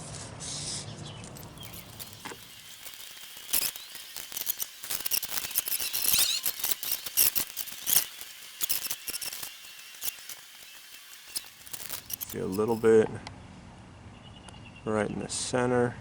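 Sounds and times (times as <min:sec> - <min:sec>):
clicks and scrapes of hand work: 0:01.4 - 0:12.9.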